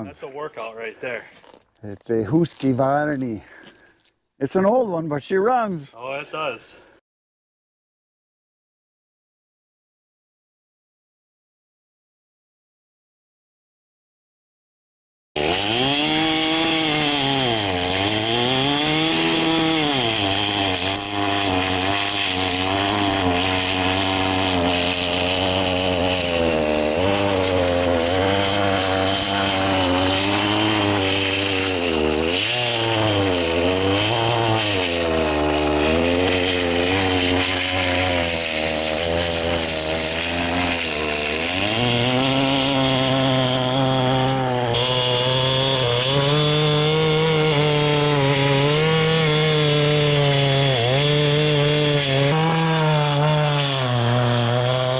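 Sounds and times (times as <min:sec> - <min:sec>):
chainsaw cutting log: 0:15.4 - 0:54.9.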